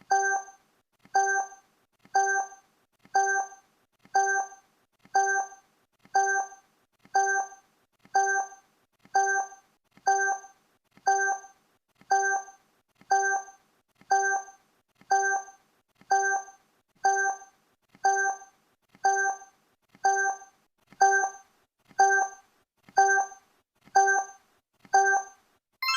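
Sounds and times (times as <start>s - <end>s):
countdown timer blips: 0.1s - 0.5s, 1.2s - 1.6s, 2.2s - 2.6s, 3.2s - 3.6s, 4.2s - 4.6s, 5.2s - 5.6s, 6.2s - 6.6s, 7.2s - 7.6s, 8.2s - 8.6s, 9.2s - 10.5s, 11.1s - 11.5s, 12.1s - 12.5s, 13.1s - 13.5s, 14.1s - 14.5s, 15.1s - 15.5s, 16.1s - 17.4s, 18.0s - 18.4s, 19.0s - 19.4s, 20.0s - 20.4s, 21.0s - 21.4s, 22.0s - 22.4s, 23.0s - 23.4s, 24.0s - 24.3s, 25.0s - 25.9s.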